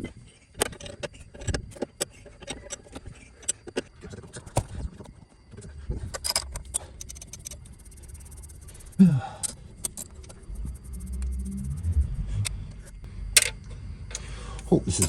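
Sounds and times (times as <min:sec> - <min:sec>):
metal tools clinking and knocking: 0:06.1 - 0:07.6.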